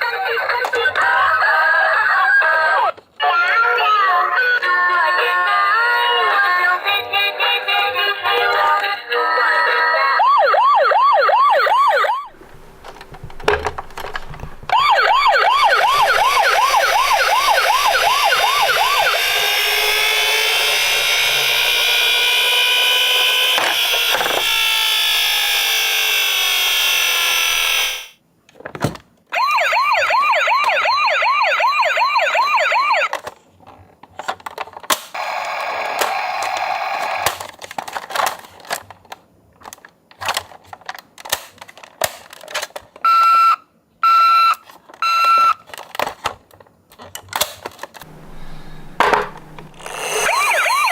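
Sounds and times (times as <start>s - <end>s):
toy sirens yelping: 9.8s - 13.0s, 14.7s - 28.2s, 29.4s - 33.2s, 35.2s - 37.4s, 48.1s - 50.9s
low electronic tone: 48.1s - 50.9s.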